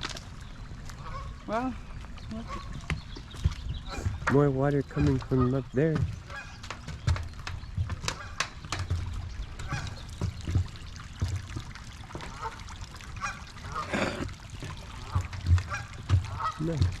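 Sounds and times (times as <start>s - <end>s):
geese honking: 1.0s - 1.6s, 2.3s - 2.8s, 6.3s - 6.6s, 12.3s - 14.1s, 14.9s - 16.8s
low muffled thumps: 2.8s - 11.7s.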